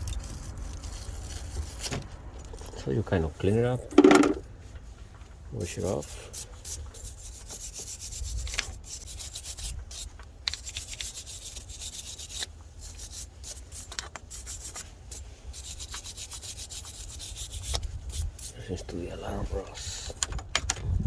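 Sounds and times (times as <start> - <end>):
brush scrubbing metal terminal: 5.6 - 20.2.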